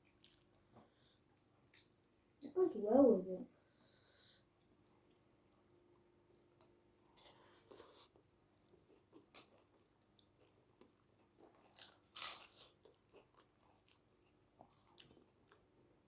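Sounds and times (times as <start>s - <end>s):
faint chewing: 0.0s - 2.4s, 4.4s - 16.0s
food crunching: 8.8s - 15.8s.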